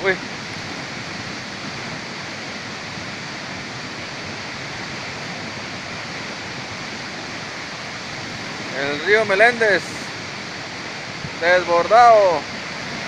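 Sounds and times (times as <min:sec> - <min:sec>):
river rushing: 0:00.0 - 0:13.0.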